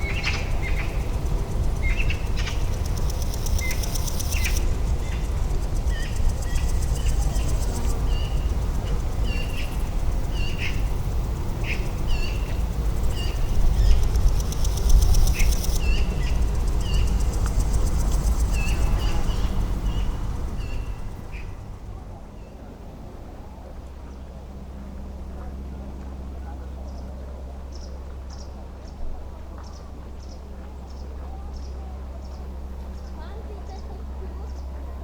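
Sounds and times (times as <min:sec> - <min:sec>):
high fine buzzing: 0:00.0 - 0:21.3
small birds chirping: 0:00.0 - 0:21.6, 0:29.6 - 0:34.8
low outdoor rumble: 0:00.0 - 0:35.0.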